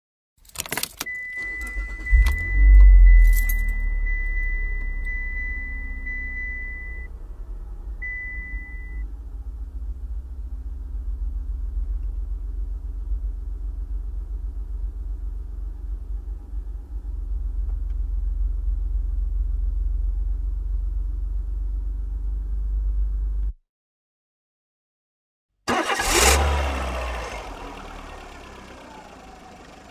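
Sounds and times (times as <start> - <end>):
keys and ignition clicks: 0.4 - 5.5
car engine cranking and starting: 0.4 - 23.5, 25.7 - 29.9
high warning chime beeping: 1.1 - 7.1
car engine idling: 1.3 - 23.5, 25.7 - 29.9.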